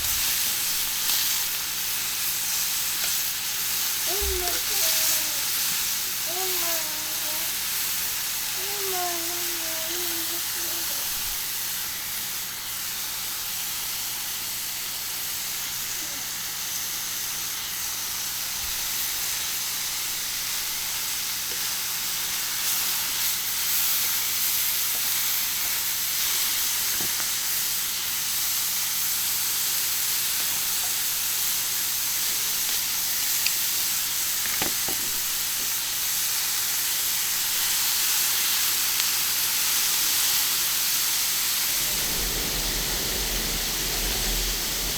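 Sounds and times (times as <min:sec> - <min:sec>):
meat sizzling on griddle: 0:00.0 - 0:11.0.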